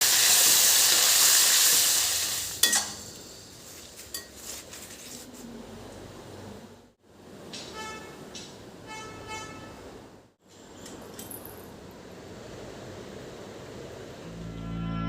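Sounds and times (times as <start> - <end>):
food sizzling in a pan: 0.0 - 4.3.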